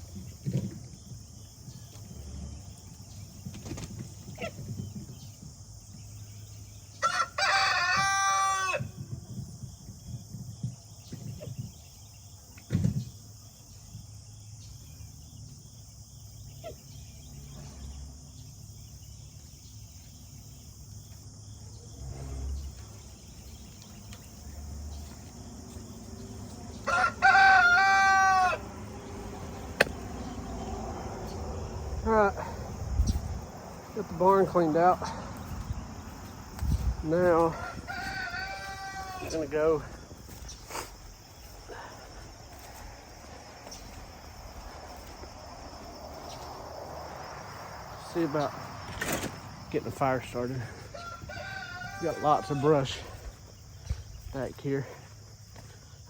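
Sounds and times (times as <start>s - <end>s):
rooster crowing: 6.9s - 9.0s, 25.4s - 32.5s, 35.0s - 40.0s, 50.7s - 53.2s.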